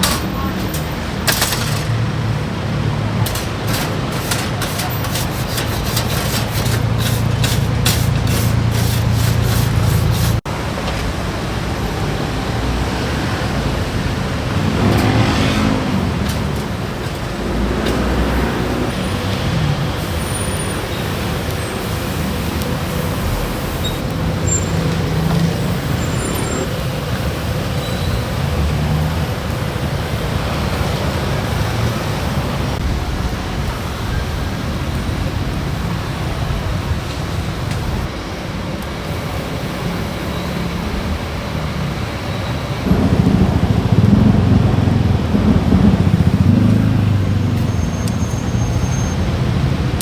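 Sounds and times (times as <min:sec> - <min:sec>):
road traffic: 0:00.0 - 0:50.0
vehicle engine passing: 0:12.4 - 0:20.2, 0:42.8 - 0:48.8.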